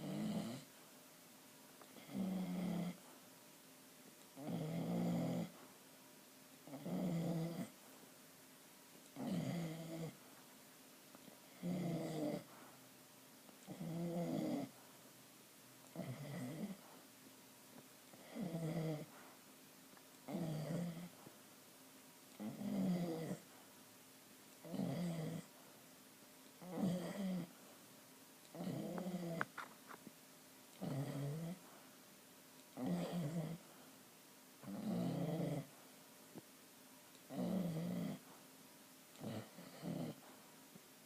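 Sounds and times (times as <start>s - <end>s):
dog snoring: 0.0s - 0.7s, 1.9s - 3.1s, 4.4s - 5.6s, 6.6s - 7.8s, 9.2s - 10.2s, 11.4s - 12.7s, 13.6s - 14.8s, 15.9s - 17.0s, 18.1s - 19.2s, 20.3s - 21.2s, 22.3s - 23.5s, 24.6s - 25.6s, 26.6s - 27.5s, 28.5s - 29.7s, 30.8s - 31.8s, 32.8s - 33.7s, 34.6s - 35.8s, 37.3s - 38.3s, 39.2s - 40.3s.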